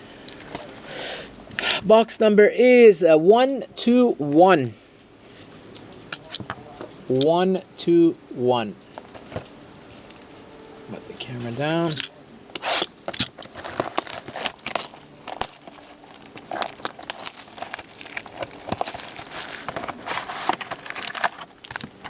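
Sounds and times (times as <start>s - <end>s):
shrink wrap tearing and crinkling: 12.6s - 22.0s.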